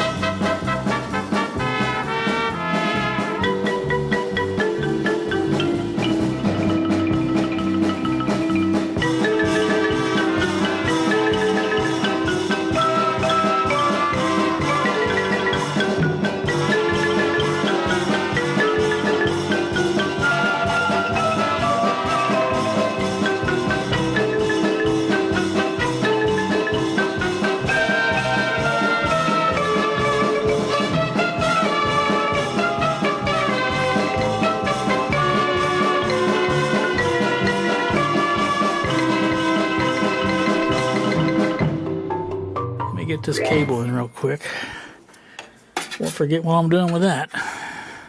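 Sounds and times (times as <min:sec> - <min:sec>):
marimba background music: 0:01.6 - 0:44.0.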